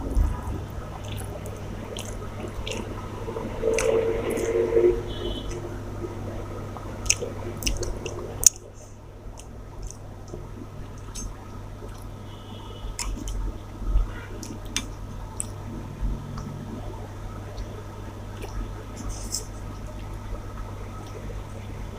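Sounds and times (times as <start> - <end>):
person chewing wetly: 0.0 - 2.9, 7.0 - 12.1, 13.0 - 13.5, 14.4 - 16.8, 18.3 - 20.1
small mouth clicks: 13.0 - 13.4.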